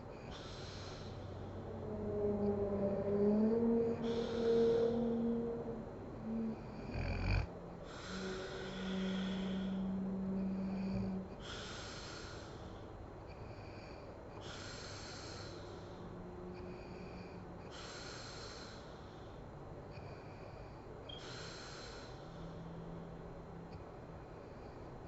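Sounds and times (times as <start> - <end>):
soft hissing breaths: 0.0 - 25.0
woman snoring: 6.2 - 12.5.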